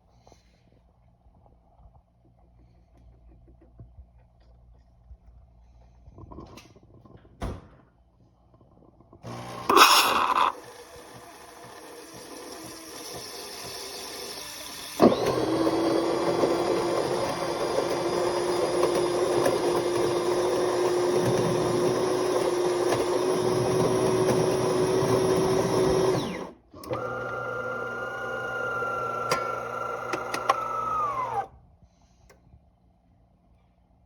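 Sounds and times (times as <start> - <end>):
espresso machine grinder humming: 9.2 - 31.5.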